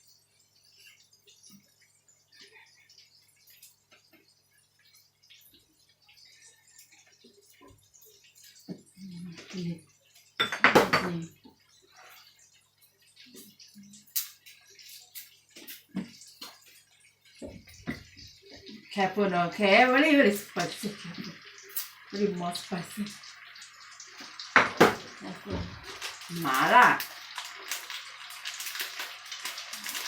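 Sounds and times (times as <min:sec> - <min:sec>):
containers and utensils clicking: 0:24.2 - 0:30.0.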